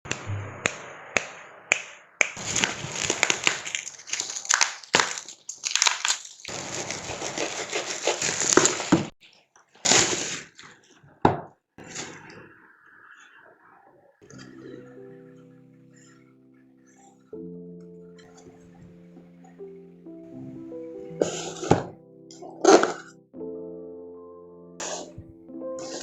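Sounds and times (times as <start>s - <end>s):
packaging crinkling and rustling: 2.4s - 9.2s.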